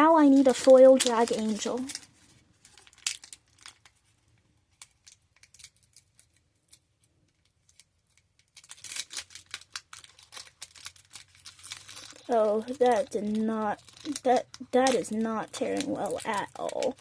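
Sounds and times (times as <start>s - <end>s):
plastic wrapper crinkling: 0.0s - 17.0s
wrapper tearing open: 0.4s - 17.0s.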